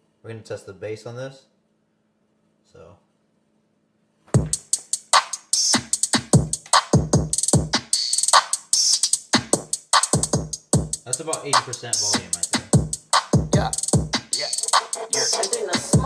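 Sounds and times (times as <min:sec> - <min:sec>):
hip hop beat through speaker: 0:04.4 - 0:16.0.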